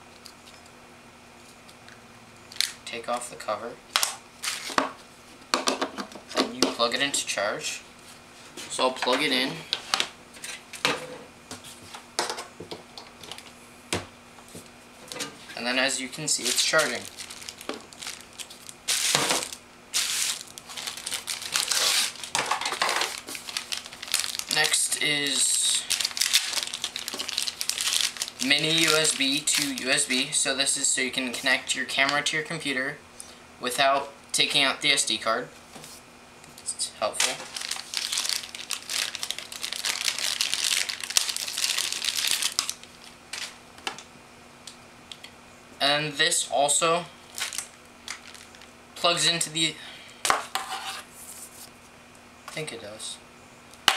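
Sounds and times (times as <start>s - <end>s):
plastic packaging crinkling: 15.9s - 30.3s, 37.2s - 43.6s, 47.2s - 48.8s.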